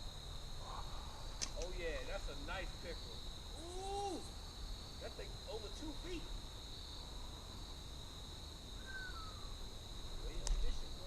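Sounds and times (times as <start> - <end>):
insect chorus trilling: 0.0 - 11.0.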